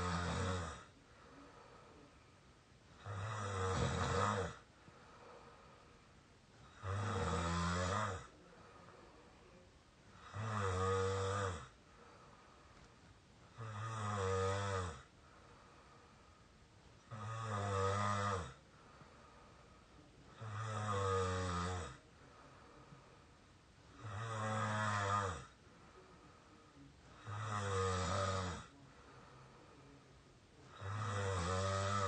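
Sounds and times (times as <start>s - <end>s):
person snoring squeakily: 0.0s - 0.9s, 3.0s - 4.6s, 6.7s - 8.3s, 13.6s - 15.1s, 17.1s - 18.6s, 24.0s - 25.5s, 27.2s - 28.7s, 30.7s - 32.0s.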